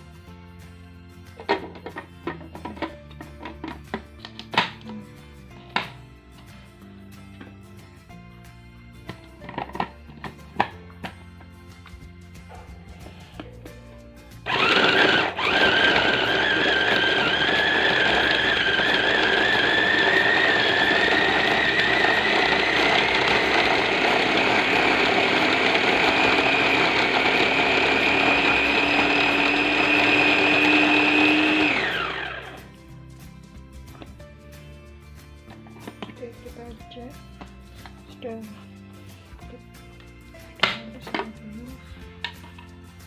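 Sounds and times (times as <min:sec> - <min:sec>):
food chopper motor whining: 0:14.4 - 0:32.8.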